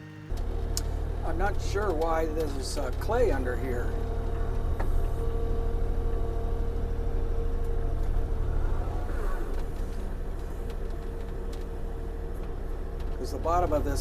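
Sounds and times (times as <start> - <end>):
excavator diesel engine running: 0.0 - 14.0.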